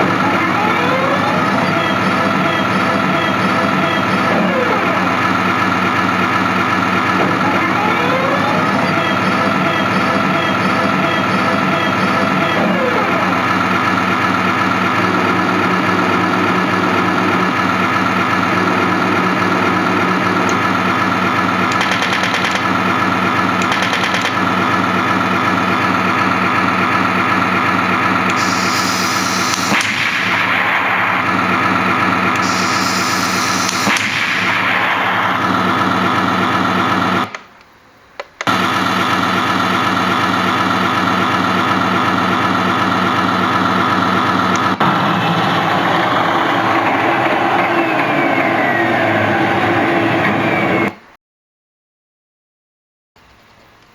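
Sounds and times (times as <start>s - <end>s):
synthesised tank engine: 0.0s - 51.2s
gun firing sound effects: 21.5s - 24.7s, 28.3s - 31.5s, 32.3s - 37.5s.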